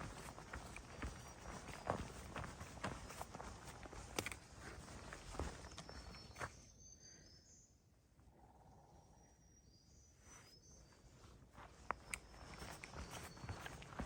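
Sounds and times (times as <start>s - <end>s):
footsteps on trail: 0.0s - 6.6s, 11.3s - 14.0s
faint high bird calls: 0.0s - 14.0s.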